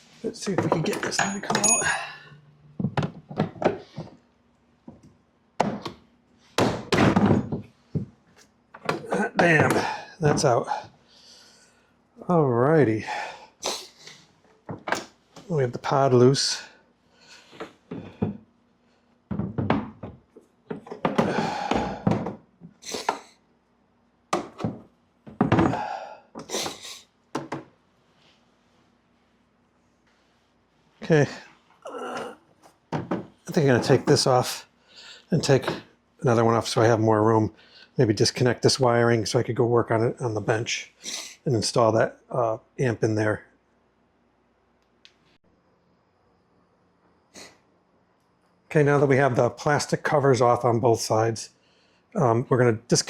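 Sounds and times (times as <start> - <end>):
hard plastic parts knocking: 2.8 - 4.2, 19.3 - 22.4, 24.3 - 26.5, 27.3 - 27.7, 32.9 - 33.4.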